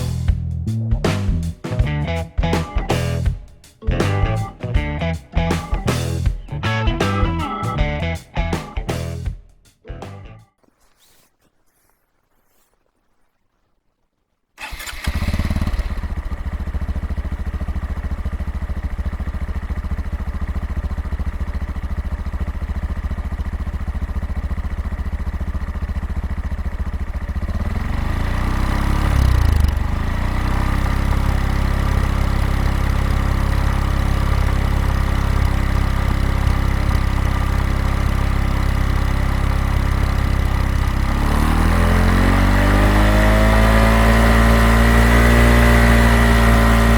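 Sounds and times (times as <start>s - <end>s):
motorcycle engine starting and idling: 14.6s - 46.9s.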